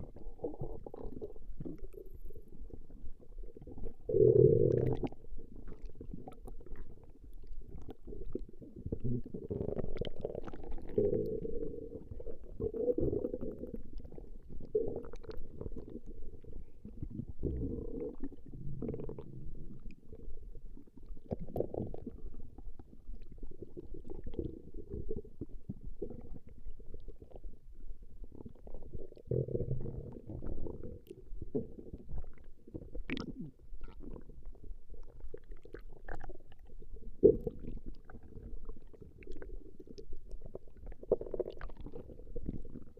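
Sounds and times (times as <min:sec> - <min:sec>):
stomach growling and gurgling: 0:00.0 - 0:42.9.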